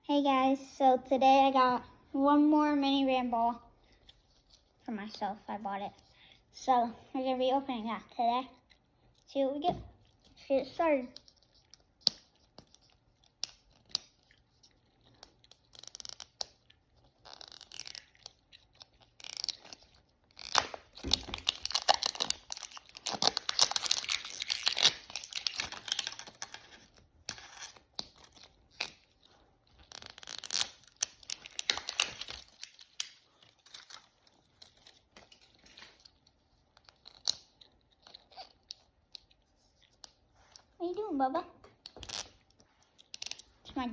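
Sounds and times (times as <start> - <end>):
plastic wrapping tearing and crinkling: 11.2 - 29.2, 29.8 - 39.3.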